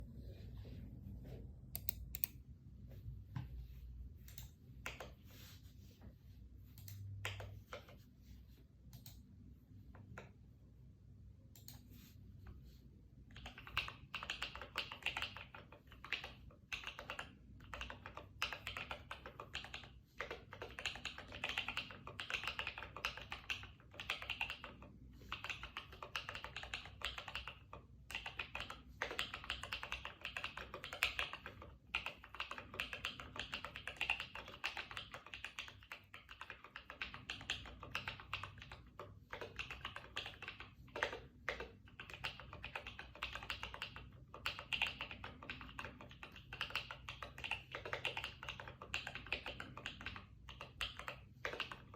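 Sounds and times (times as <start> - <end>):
mechanical keyboard typing: 1.8 - 2.3, 13.3 - 51.9.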